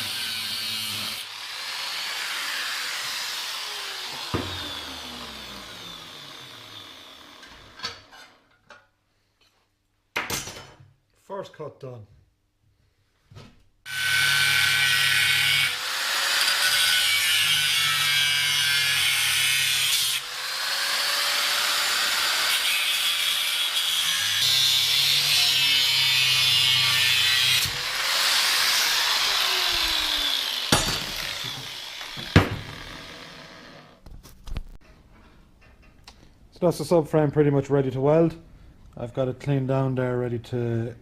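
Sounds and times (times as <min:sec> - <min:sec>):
power tool cutting steel: 0:00.0 - 0:08.2, 0:13.9 - 0:34.0
sharp knocks: 0:30.7 - 0:32.8.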